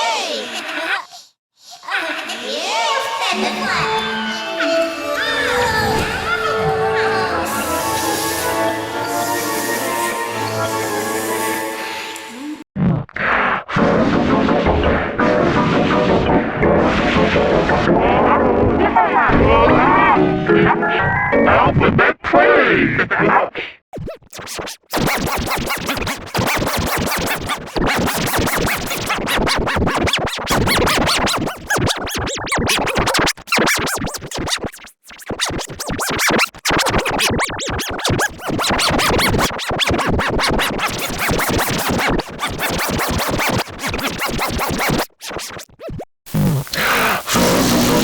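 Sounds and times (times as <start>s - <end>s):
stuttering chopped intro music: 24.0s - 48.0s.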